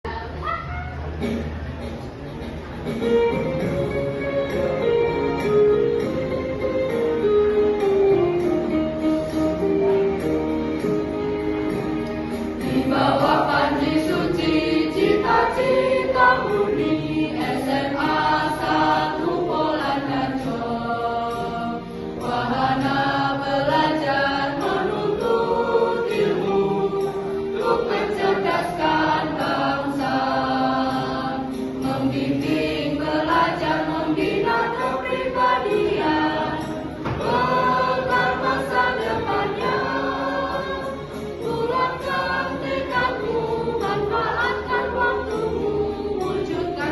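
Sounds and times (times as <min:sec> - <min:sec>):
mixed choir singing a march: 0:12.3 - 0:46.9.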